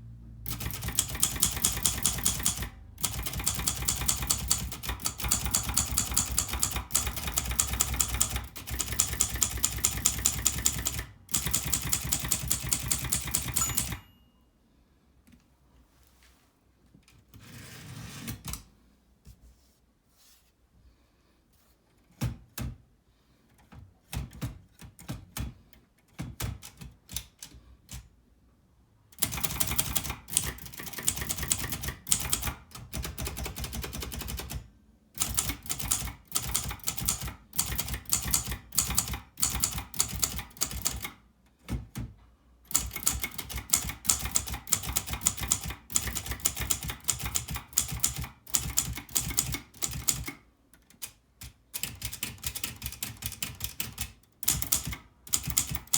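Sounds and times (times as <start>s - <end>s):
typewriter keys clacking: 0.5s - 14.1s, 29.2s - 34.6s, 35.2s - 41.2s, 42.7s - 55.9s.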